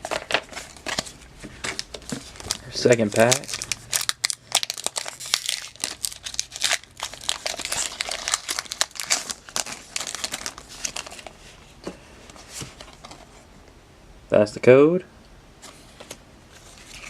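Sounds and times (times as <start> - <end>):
foil wrapper crinkling: 0.0 - 11.4.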